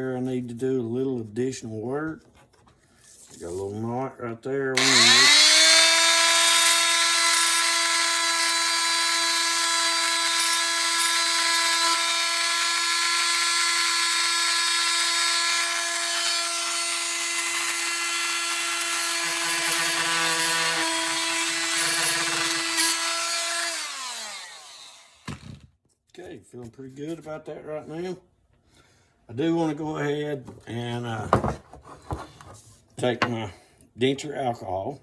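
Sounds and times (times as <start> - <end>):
power tool high-speed whine: 4.8 - 15.9, 23.6 - 25.3.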